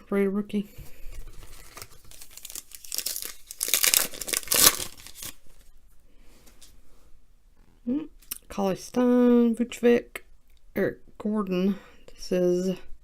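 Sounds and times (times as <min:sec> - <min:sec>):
foil wrapper tearing and crinkling: 0:01.1 - 0:05.6.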